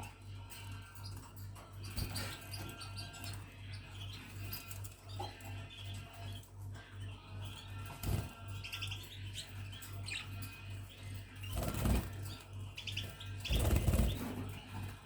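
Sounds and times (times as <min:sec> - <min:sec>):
budgerigars chirping: 0:01.8 - 0:06.5, 0:11.2 - 0:14.6
wings flapping: 0:11.4 - 0:12.3, 0:13.4 - 0:14.6.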